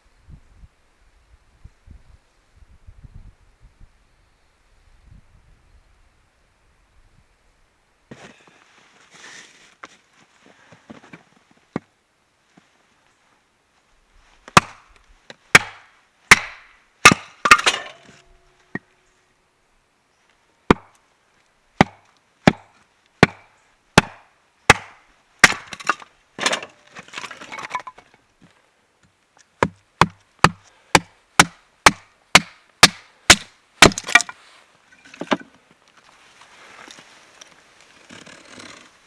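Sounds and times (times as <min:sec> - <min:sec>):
firewood chopping knocks: 0:15.6 - 0:18.0, 0:21.8 - 0:26.7, 0:29.6 - 0:34.4
wood cracking and splintering: 0:24.7 - 0:28.0, 0:32.4 - 0:34.4.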